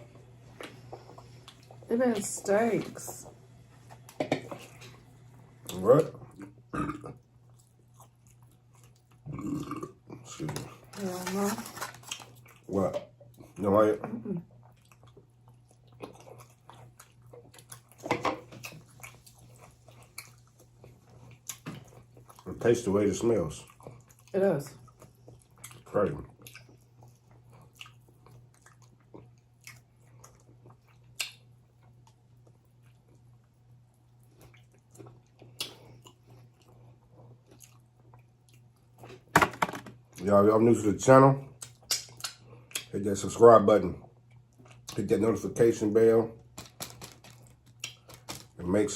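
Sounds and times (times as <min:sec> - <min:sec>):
faint low hum: 0:00.0 - 0:48.9
chewing and mouth sounds: 0:00.6 - 0:02.2, 0:05.6 - 0:10.9, 0:14.4 - 0:22.6, 0:23.5 - 0:39.3, 0:41.5 - 0:43.0, 0:44.1 - 0:45.1, 0:46.5 - 0:48.6.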